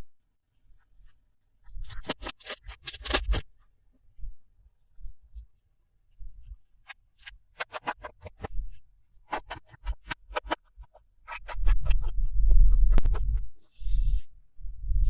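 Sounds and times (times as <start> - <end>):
sharp clicks and crinkles: 1.8 - 3.5
hands handling toy packaging: 1.9 - 3.4.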